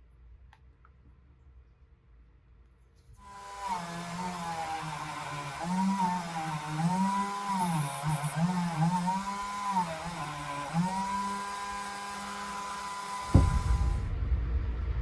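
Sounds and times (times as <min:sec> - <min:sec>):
power tool whine: 0:03.2 - 0:14.1
loud rumbling noise: 0:13.3 - 0:15.0.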